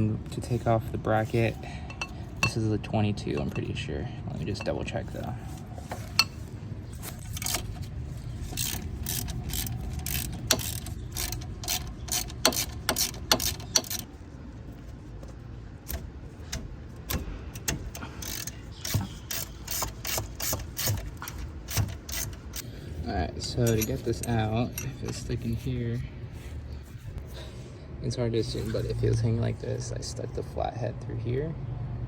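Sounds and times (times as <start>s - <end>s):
socket ratchet clicking: 8.5s - 14.1s, 15.9s - 22.7s.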